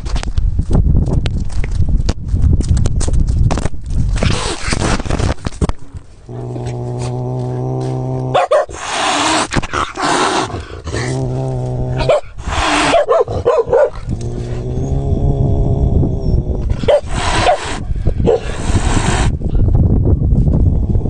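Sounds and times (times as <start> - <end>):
cat growling: 6.3 - 17.8
cat hissing: 6.4 - 13.1, 14.2 - 19.3.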